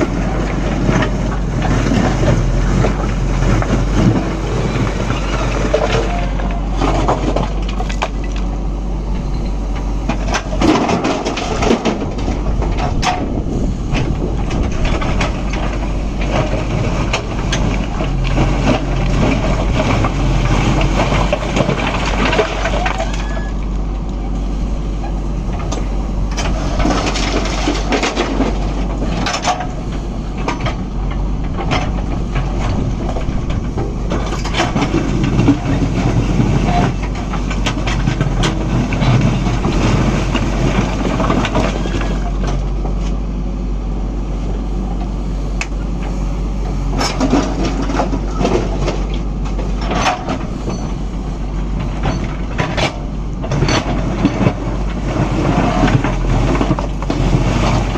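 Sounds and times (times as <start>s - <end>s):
stones clattering into lorry: 0.0s - 8.5s, 10.0s - 23.6s, 25.5s - 42.9s, 51.7s - 57.9s
diesel engine running: 0.0s - 57.9s.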